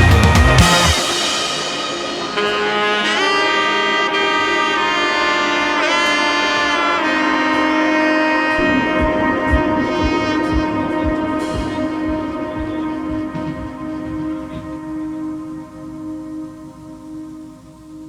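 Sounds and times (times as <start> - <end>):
steady low drum beat: 0.0 - 2.5, 8.8 - 14.9
melody of long held notes: 0.0 - 18.0.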